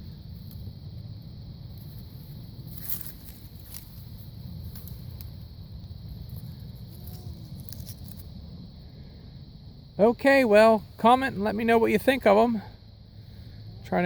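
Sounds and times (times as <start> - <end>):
wind rumble on microphone: 0.0 - 10.0.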